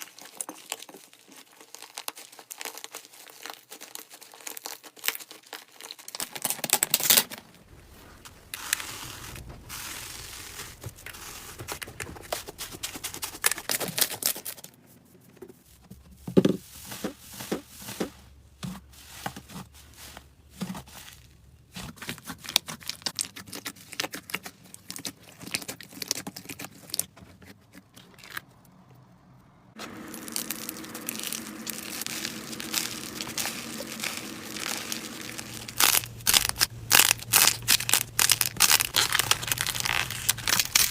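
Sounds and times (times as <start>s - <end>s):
slime crackling and popping: 0.0s - 14.6s, 29.8s - 40.9s.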